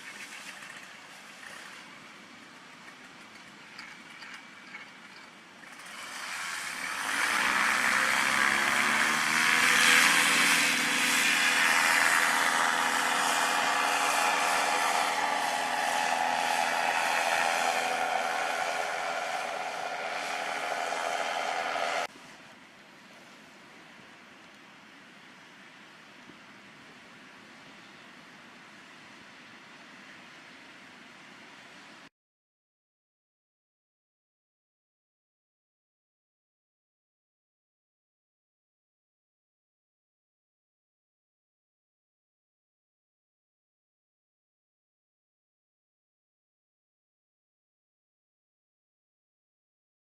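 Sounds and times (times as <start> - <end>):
paramotor engine revving: 5.8 - 22.1.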